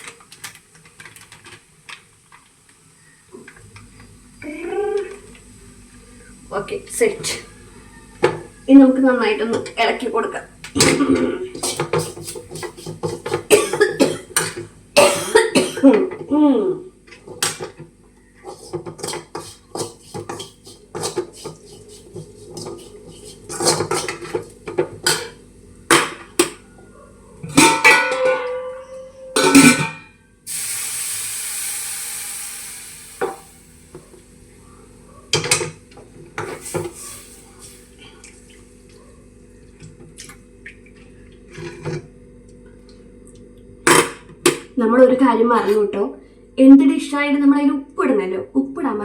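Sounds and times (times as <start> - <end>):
spoon scraping in cooking pan: 11.5 - 14.6, 18.4 - 26.2
steady hiss: 30.5 - 34.1.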